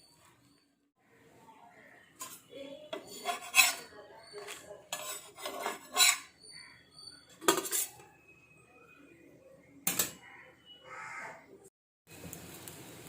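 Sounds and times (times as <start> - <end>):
metal utensil scraping pan: 2.2 - 6.7, 7.3 - 8.1.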